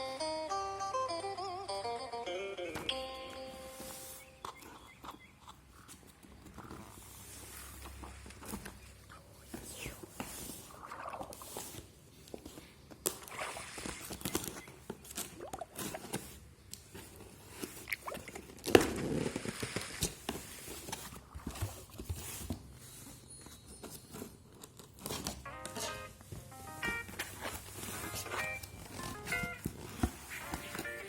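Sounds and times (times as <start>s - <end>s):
packaging rustling and crinkling: 11.4s - 31.0s.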